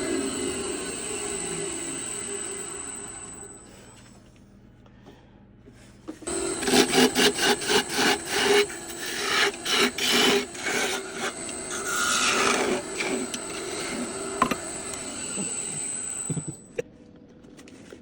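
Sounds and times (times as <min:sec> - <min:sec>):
machine whine: 0:00.0 - 0:04.4, 0:06.3 - 0:16.8
tool rasping across wood: 0:06.3 - 0:16.6.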